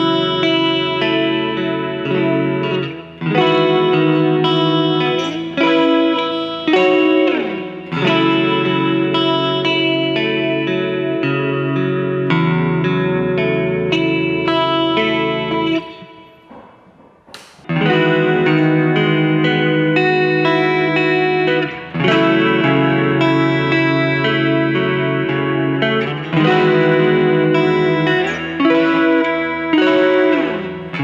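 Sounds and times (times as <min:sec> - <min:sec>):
electric guitar chords: 0:00.0 - 0:16.5, 0:17.4 - 0:31.0.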